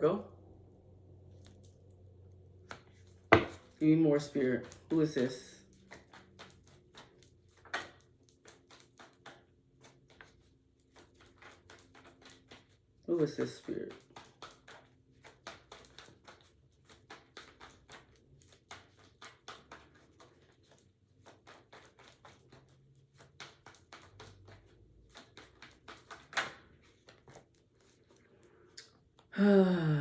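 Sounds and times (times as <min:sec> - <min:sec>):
cards being shuffled: 0:08.6 - 0:28.1.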